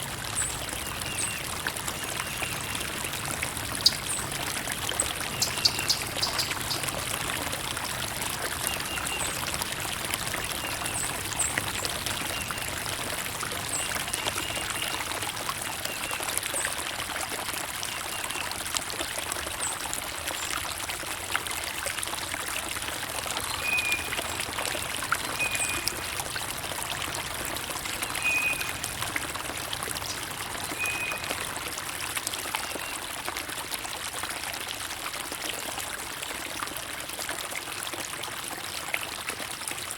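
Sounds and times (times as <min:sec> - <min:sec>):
stream water trickling: 0:00.0 - 0:39.9
small birds chirping: 0:03.8 - 0:04.3, 0:05.0 - 0:06.9.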